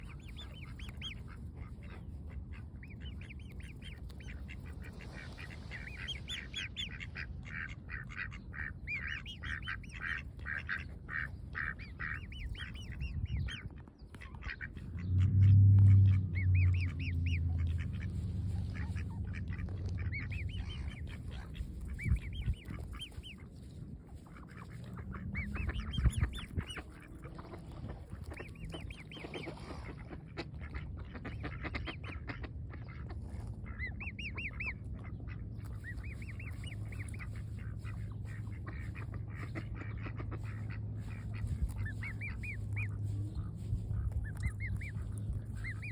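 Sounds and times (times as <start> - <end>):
loud low hum: 14.7 - 31.7, 32.5 - 45.9.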